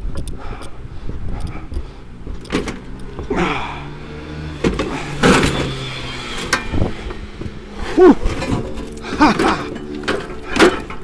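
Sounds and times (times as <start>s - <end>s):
steady low hum: 0.6s - 10.2s
steel axle knocking and clanking: 4.6s - 11.0s.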